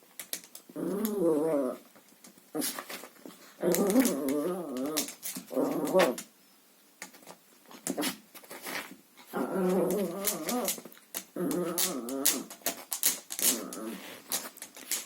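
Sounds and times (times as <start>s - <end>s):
dog growling: 0.8s - 1.9s, 3.6s - 6.2s, 9.3s - 12.6s, 13.4s - 14.3s.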